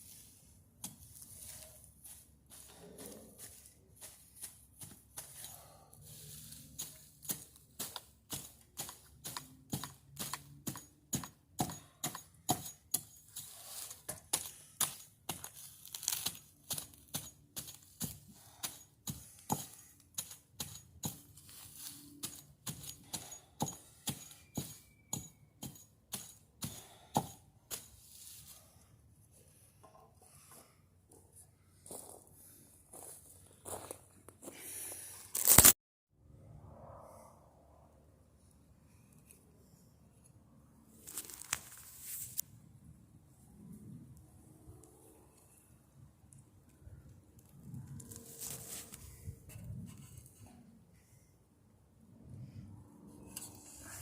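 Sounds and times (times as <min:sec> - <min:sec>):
blade hacking dry fibre: 0:04.8 - 0:28.0.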